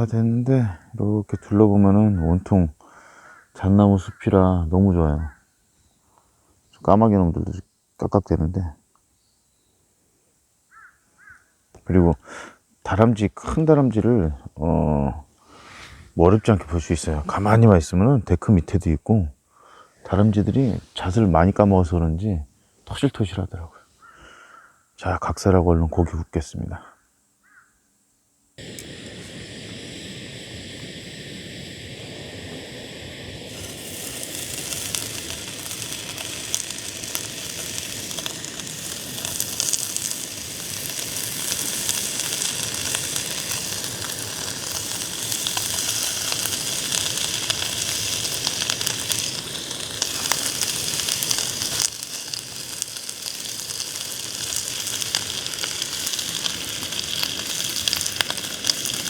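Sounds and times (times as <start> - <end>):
meat sizzling in a pan: 28.6 - 59.0.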